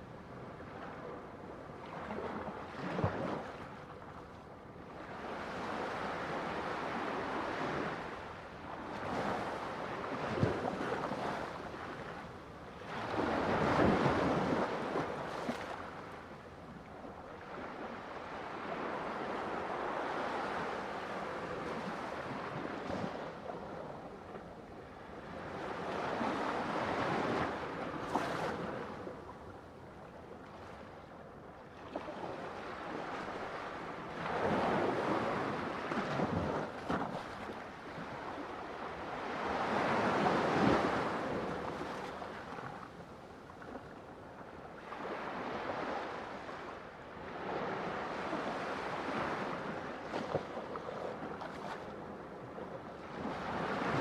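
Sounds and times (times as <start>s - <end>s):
ocean waves breaking on shore: 12.8s - 16.4s, 17.4s - 24.4s, 31.8s - 54.0s.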